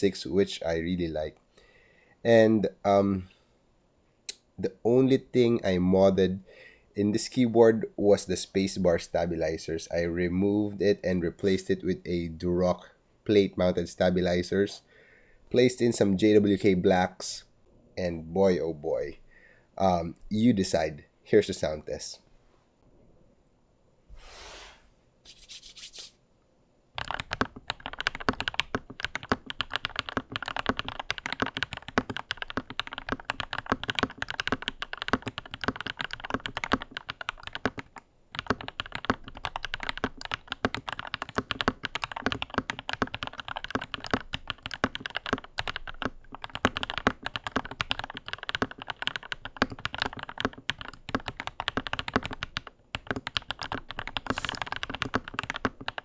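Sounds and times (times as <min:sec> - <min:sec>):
short hissing: 0:24.1 - 0:26.2
mechanical keyboard typing: 0:27.0 - 0:56.0.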